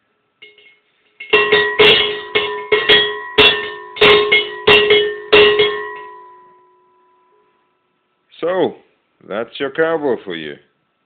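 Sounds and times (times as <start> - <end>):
cowbell ringing: 0.4 - 7.4.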